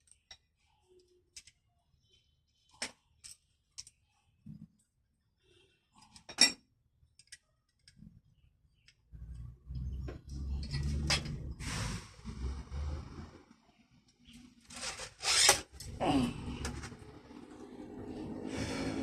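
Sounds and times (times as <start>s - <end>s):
metal parts and tools clinking: 10.5s - 11.4s.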